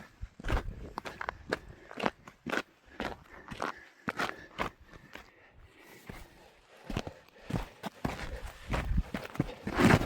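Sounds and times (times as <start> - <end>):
boots crunching on snow: 6.1 - 10.0.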